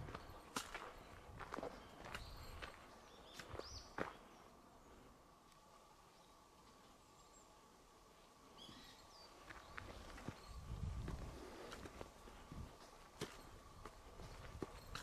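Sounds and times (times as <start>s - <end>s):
footsteps crunching on path: 0.0s - 4.4s, 9.4s - 15.0s.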